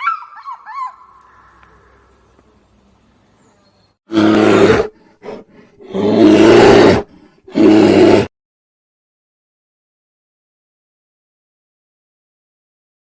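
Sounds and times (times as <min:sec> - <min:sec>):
tiger roaring: 0:04.1 - 0:08.3.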